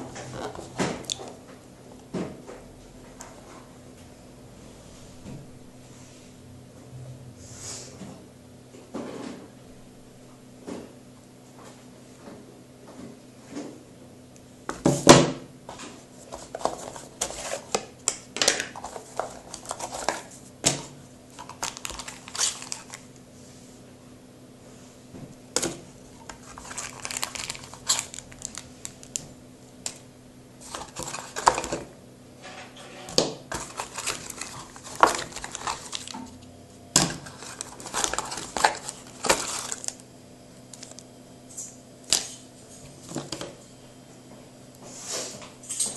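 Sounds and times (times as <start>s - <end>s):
plastic and cardboard crinkling: 15.7s - 23.1s, 25.6s - 30.0s, 30.6s - 31.9s, 33.5s - 36.4s, 37.0s - 40.0s, 40.7s - 41.1s.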